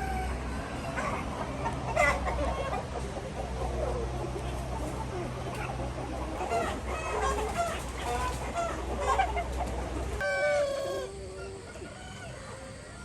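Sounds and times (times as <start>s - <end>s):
chickens clucking: 0.0s - 13.0s
long loud chicken call: 10.2s - 13.0s.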